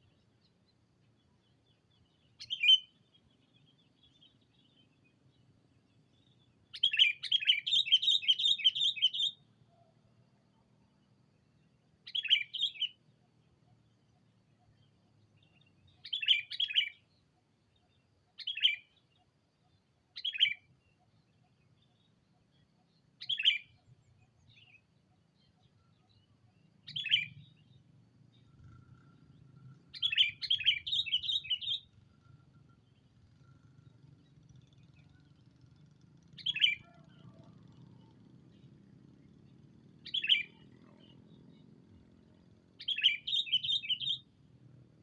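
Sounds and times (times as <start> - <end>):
bulbul chirping calls: 2.2 - 4.8, 6.2 - 9.9, 12.1 - 13.0, 15.8 - 17.1, 23.2 - 35.4, 36.3 - 38.8, 39.5 - 44.4.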